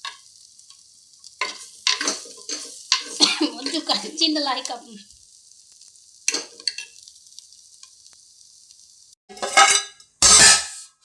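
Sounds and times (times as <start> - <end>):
food sizzling in a pan: 0.0 - 11.0
spoon scraping metal pan: 1.3 - 4.1, 6.2 - 7.1, 9.3 - 11.0.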